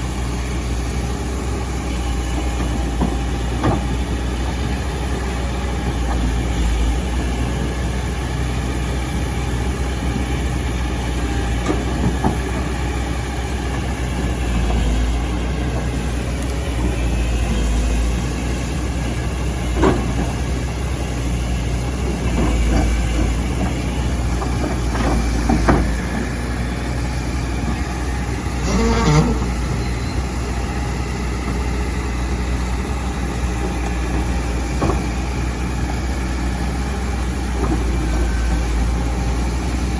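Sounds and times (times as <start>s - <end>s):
excavator diesel engine running: 0.0s - 39.9s
machine knocks and squeals: 13.8s - 31.7s.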